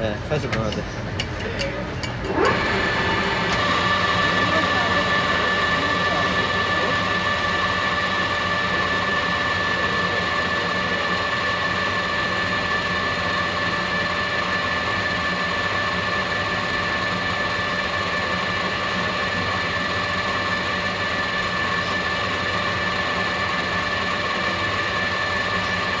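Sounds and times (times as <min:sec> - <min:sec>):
metal lathe running: 0:00.0 - 0:26.0
spindle drive whine: 0:00.0 - 0:26.0.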